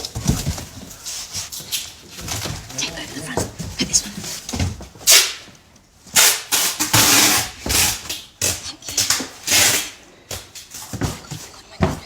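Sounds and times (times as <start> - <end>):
tape pulled off a roll: 6.1 - 8.3.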